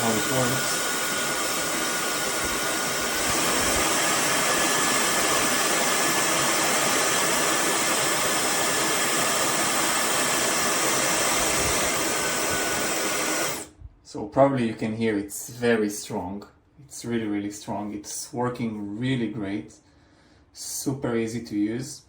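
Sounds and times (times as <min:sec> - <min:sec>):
faint high motor whine: 0:00.0 - 0:13.7
hair dryer air rush: 0:00.0 - 0:13.8.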